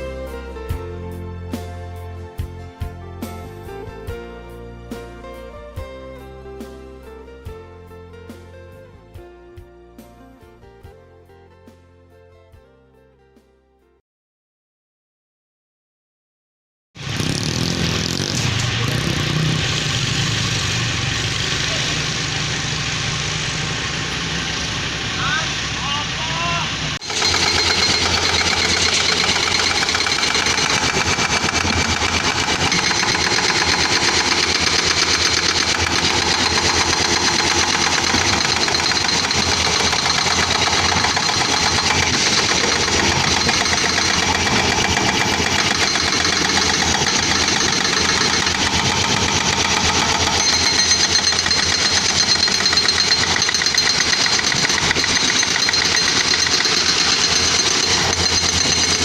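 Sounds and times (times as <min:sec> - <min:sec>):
excavator diesel engine running: 0:17.0 - 0:59.0.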